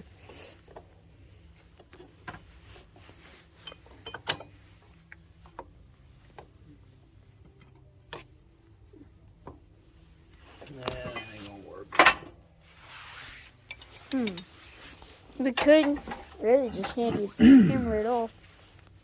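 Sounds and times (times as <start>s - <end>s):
tools clicking and knocking: 3.6s - 4.6s.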